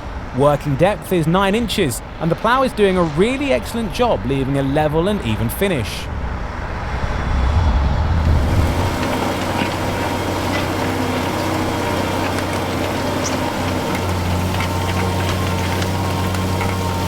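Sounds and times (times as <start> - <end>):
tractor diesel engine under load: 7.6 - 17.0.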